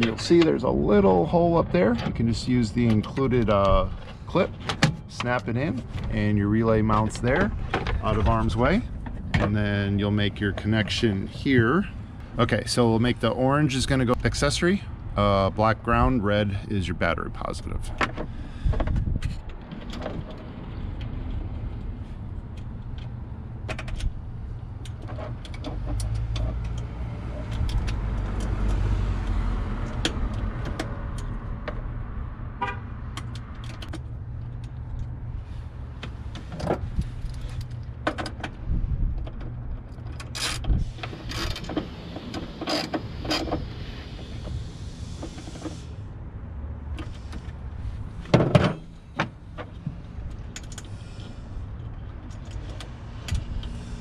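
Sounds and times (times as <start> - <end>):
steady low rumble: 0.0 - 19.7, 29.2 - 54.0.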